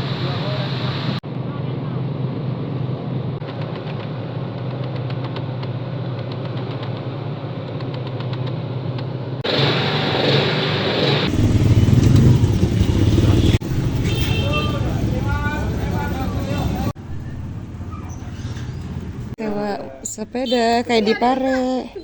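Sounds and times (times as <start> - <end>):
louder engine: 9.4 - 17.9
motor engine humming: 11.3 - 19.4
wind rumble: 11.3 - 19.4.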